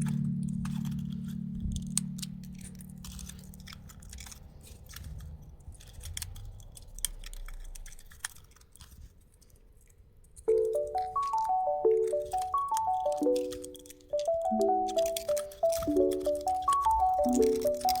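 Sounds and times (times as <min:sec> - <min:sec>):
low hum: 0:00.0 - 0:05.7
plastic pieces clicking and rattling: 0:00.0 - 0:18.0.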